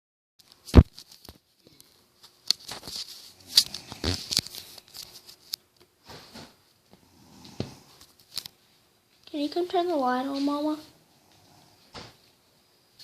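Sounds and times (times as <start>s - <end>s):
rustling: 0.4s - 6.8s.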